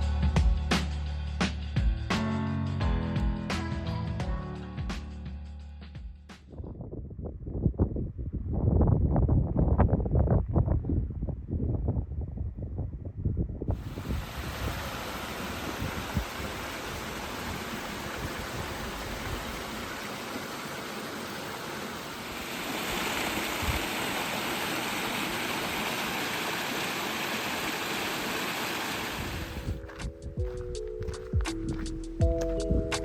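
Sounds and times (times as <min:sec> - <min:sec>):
rushing water: 0:13.8 - 0:29.7.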